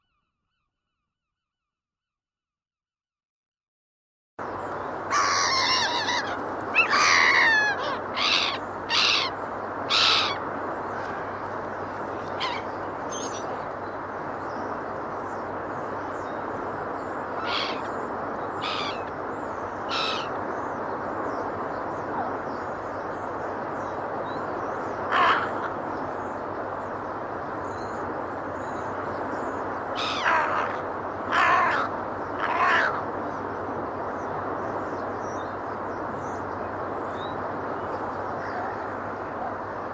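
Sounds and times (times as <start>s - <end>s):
gulls calling: 4.4s - 27.2s, 27.9s - 33.6s, 37.4s - 39.9s.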